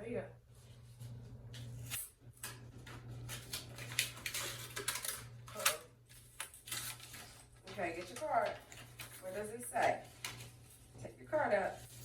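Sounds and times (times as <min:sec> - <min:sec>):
wrapping paper tearing and crinkling: 0:03.2 - 0:10.8.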